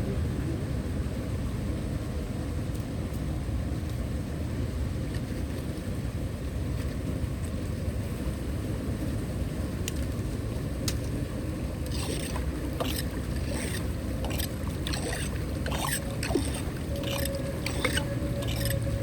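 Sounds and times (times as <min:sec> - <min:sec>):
water flowing: 0:11.8 - 0:19.0
short splashes and knocks: 0:11.9 - 0:18.8.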